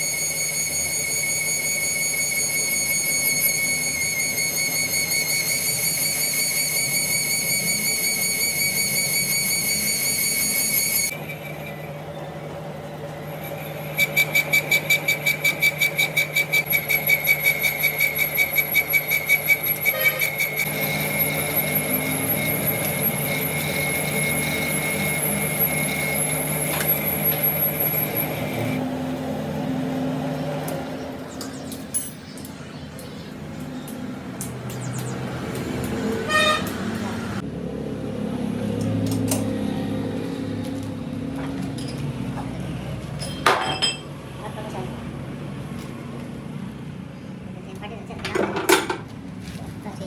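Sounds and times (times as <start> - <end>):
lathe tool squealing: 0.0 - 28.8.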